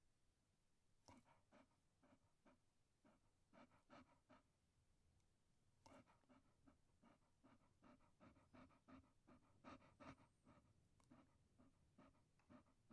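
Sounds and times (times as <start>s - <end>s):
dog panting faintly: 1.0s - 12.9s.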